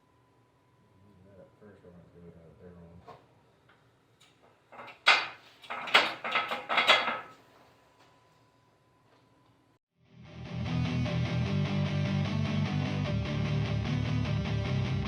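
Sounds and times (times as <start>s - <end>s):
hard objects clattering: 4.7s - 7.4s.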